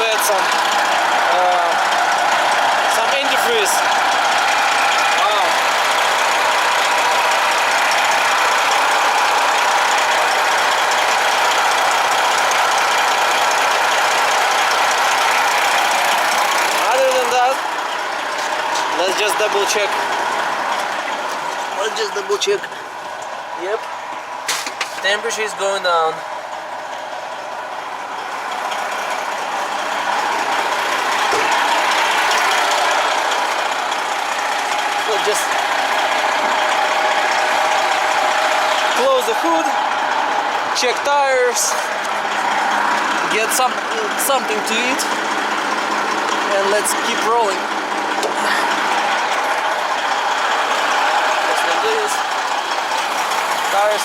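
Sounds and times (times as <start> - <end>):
diesel truck engine idling: 0.0 - 54.0.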